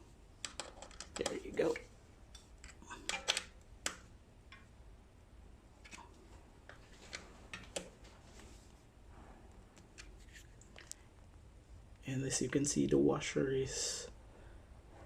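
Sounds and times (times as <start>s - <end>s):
small metal parts clicking: 0.4s - 4.6s.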